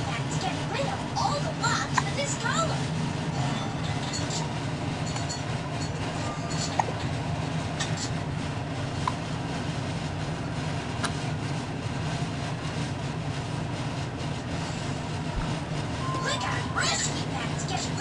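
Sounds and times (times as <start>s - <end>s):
vehicle engine rumbling: 0.0s - 18.0s.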